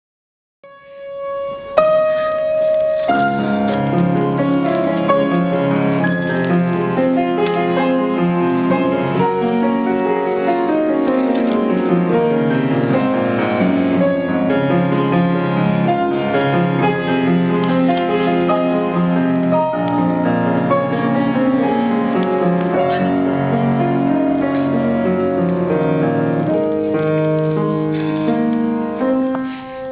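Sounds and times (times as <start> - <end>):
slow piano music: 0.6 - 29.9.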